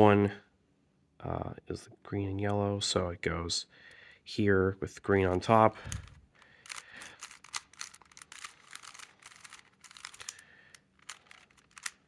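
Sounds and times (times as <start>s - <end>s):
puzzle cube plastic clicks: 5.3s - 12.0s
puzzle cube scraping turns: 5.3s - 12.0s.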